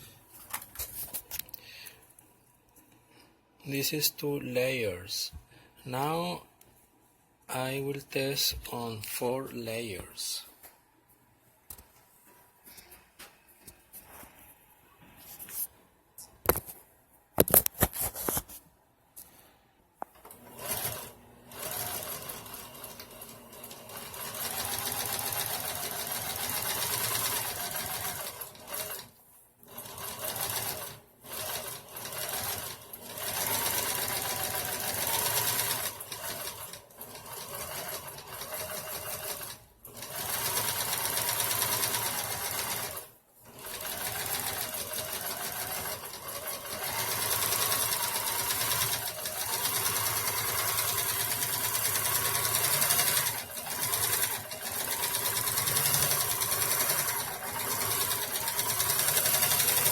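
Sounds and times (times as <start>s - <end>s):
sewing machine stitching: 20.2s - 29.1s, 29.7s - 59.9s.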